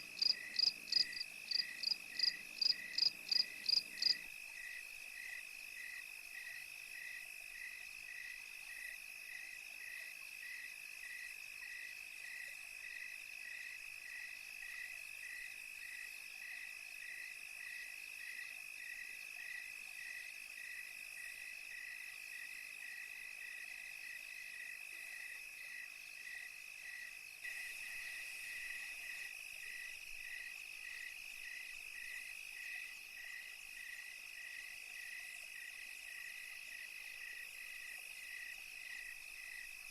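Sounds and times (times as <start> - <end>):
crickets trilling: 0.0 - 4.4.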